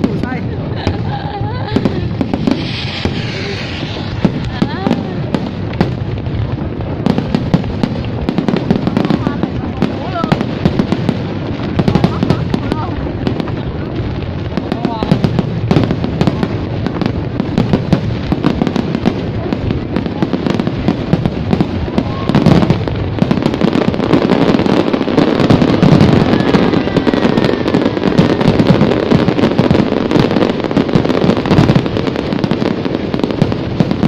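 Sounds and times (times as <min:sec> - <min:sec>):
fireworks bangs and crackling: 0:00.0 - 0:34.0
low rumble: 0:00.8 - 0:06.9.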